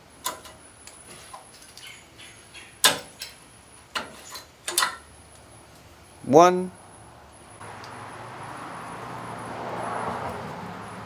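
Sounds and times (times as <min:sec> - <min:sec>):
metal brake pads clicking and clanking: 0:00.2 - 0:01.8, 0:02.8 - 0:05.2.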